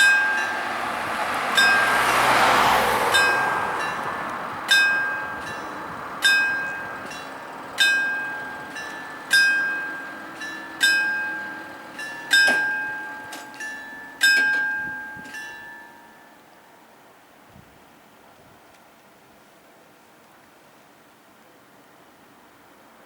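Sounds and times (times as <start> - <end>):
level-crossing warning bell ringing: 0.0 - 16.9.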